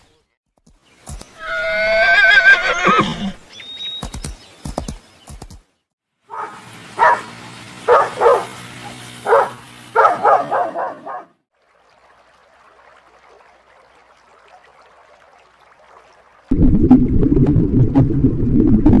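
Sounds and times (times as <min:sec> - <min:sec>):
dog barking: 0:06.3 - 0:11.4.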